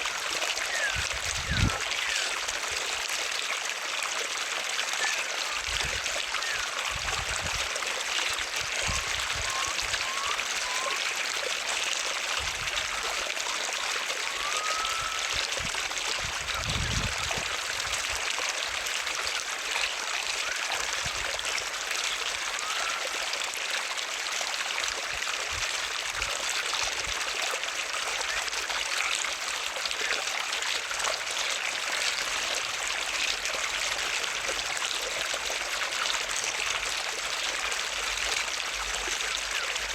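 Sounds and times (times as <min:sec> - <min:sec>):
water flowing steadily: 0:00.0 - 0:39.9.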